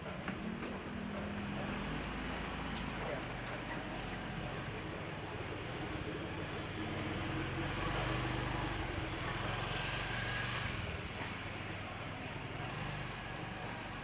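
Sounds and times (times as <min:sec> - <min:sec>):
vehicle engine passing by: 0:04.1 - 0:14.0.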